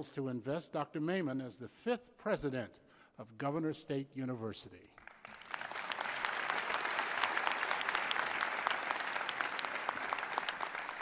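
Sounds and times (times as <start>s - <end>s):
audience applauding: 5.0s - 11.0s.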